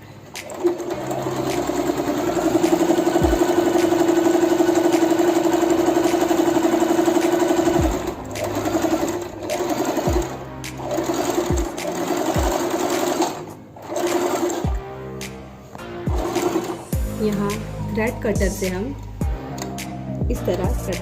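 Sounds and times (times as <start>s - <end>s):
electric sewing machine running: 0.4s - 15.0s, 16.1s - 17.3s.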